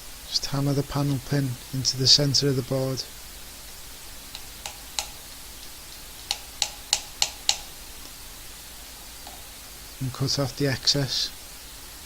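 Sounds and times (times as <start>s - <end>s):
hammer tapping pin into board: 6.3s - 7.7s.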